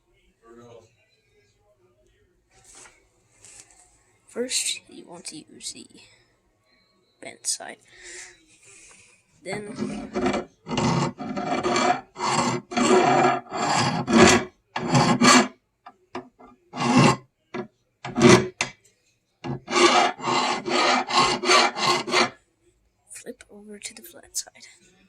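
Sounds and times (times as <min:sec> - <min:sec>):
file rasping on steel: 0:09.5 - 0:15.5, 0:16.2 - 0:17.2, 0:18.0 - 0:18.7, 0:19.4 - 0:22.4.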